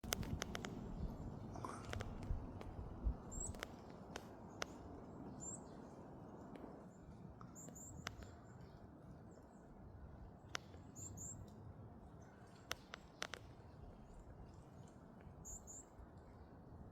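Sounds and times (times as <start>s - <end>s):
sharp clicks: 0.0s - 0.8s, 1.8s - 4.8s, 12.7s - 13.5s.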